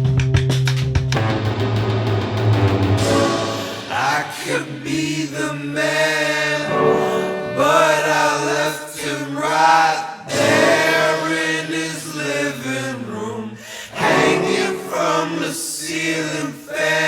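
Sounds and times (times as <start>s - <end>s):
choir-like sung notes: 3.0s - 17.0s.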